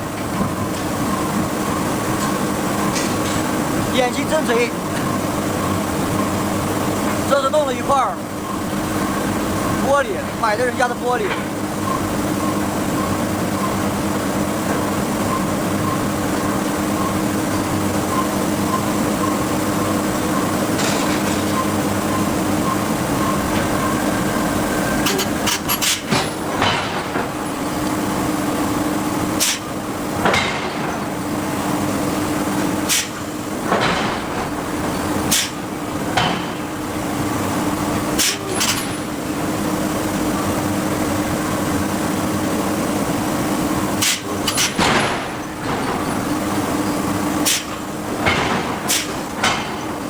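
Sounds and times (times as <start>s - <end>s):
machinery hum: 0.0s - 50.0s
forging hammer striking steel: 20.8s - 28.0s, 44.0s - 50.0s.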